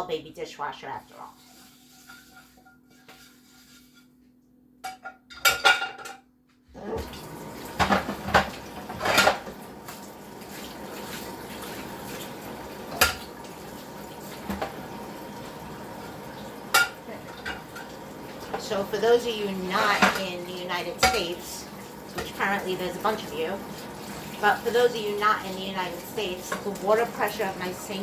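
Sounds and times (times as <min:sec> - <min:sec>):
tap water running: 0:00.1 - 0:04.0, 0:06.8 - 0:28.0
dishes and cutlery clinking: 0:04.8 - 0:06.3, 0:07.8 - 0:09.5, 0:16.7 - 0:18.7, 0:21.0 - 0:21.4.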